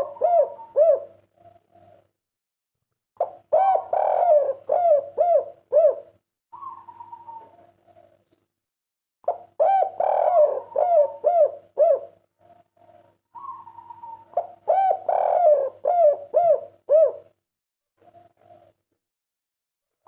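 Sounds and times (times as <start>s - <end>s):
dove cooing: 0.0s - 2.1s, 3.2s - 8.2s, 9.3s - 17.4s, 18.0s - 18.8s.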